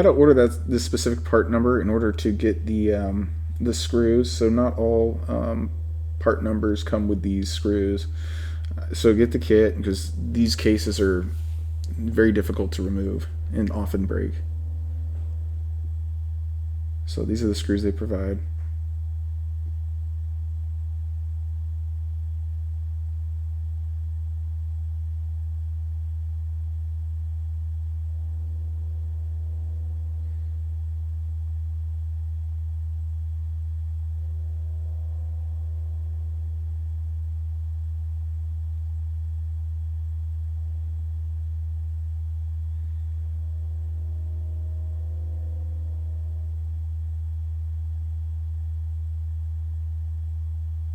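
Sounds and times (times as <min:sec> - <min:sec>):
faint higher tones: 0:00.0 - 0:20.0, 0:28.0 - 0:50.9
low electrical hum: 0:00.0 - 0:50.9.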